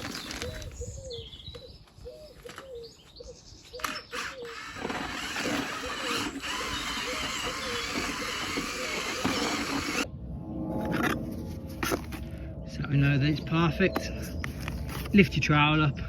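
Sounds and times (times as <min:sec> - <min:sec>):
electric paddle mixer stirring: 0:04.1 - 0:10.1.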